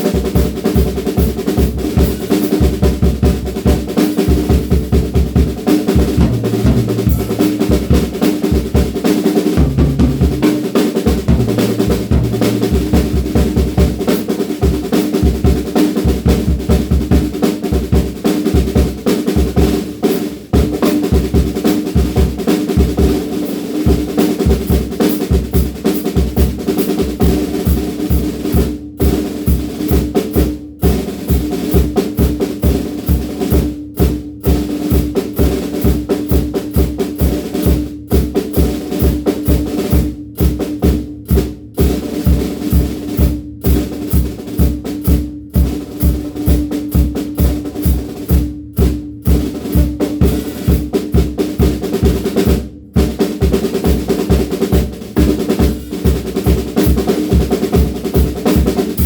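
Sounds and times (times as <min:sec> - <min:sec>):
snare drum strokes and rolls: 0:00.0 - 0:59.0
bass drum hits: 0:06.0 - 0:08.2, 0:09.6 - 0:10.6, 0:11.2 - 0:13.8.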